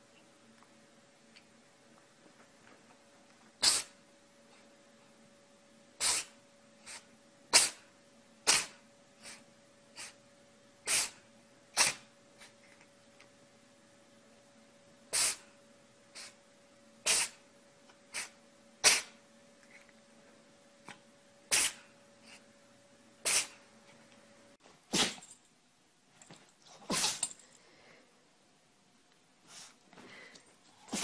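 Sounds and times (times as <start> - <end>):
animals sneezing: 3.6 - 4.0, 6.0 - 9.4, 10.0 - 10.2, 10.8 - 12.1, 15.1 - 15.5, 17.0 - 17.4, 18.1 - 19.2, 21.5 - 21.9, 23.2 - 23.6, 24.9 - 25.4, 26.8 - 27.4, 30.8 - 31.0.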